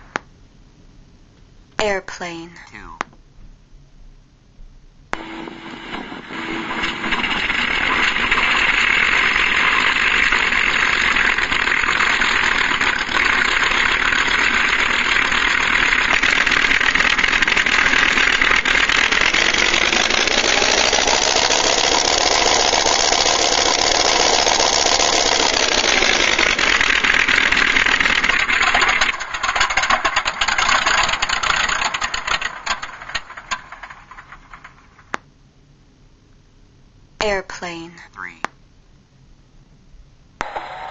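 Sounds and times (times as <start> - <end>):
simulated airplane engine: 5.1 - 35.4.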